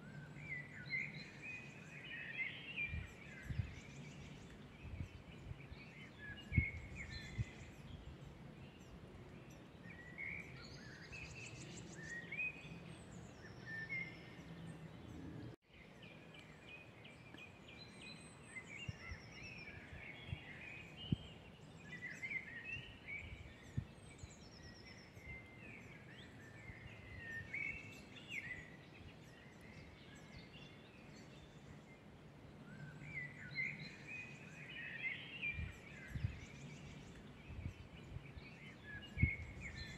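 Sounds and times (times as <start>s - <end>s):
birds singing and chirping: 0.0s - 39.9s.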